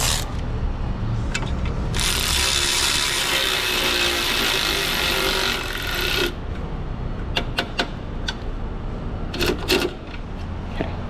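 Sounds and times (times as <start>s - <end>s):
power tool motor running: 0.0s - 0.4s, 2.0s - 6.4s.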